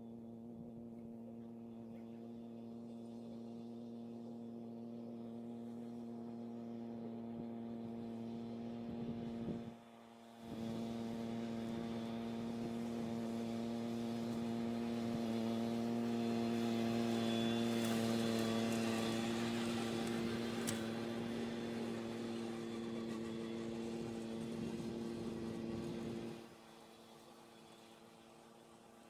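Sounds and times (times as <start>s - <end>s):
machine hum: 10.4s - 26.6s.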